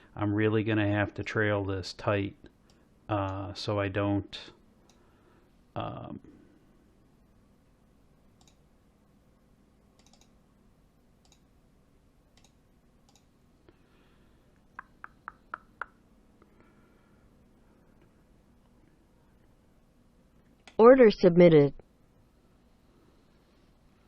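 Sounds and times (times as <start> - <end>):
computer mouse clicking: 8.4 - 8.6, 10.0 - 10.4, 11.2 - 11.5, 12.3 - 13.3.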